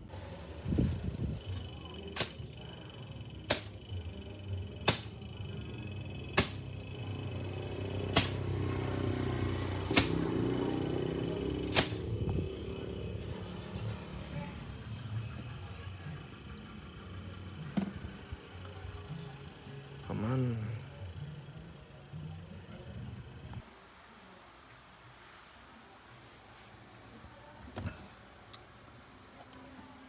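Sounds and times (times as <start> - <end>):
low hum: 0.0 - 23.6
sharp clicks: 1.1 - 8.7, 9.8 - 10.6.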